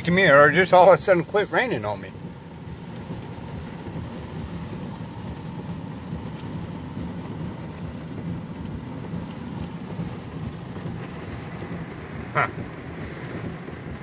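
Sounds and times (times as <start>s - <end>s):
car cabin engine drone: 0.0s - 14.0s.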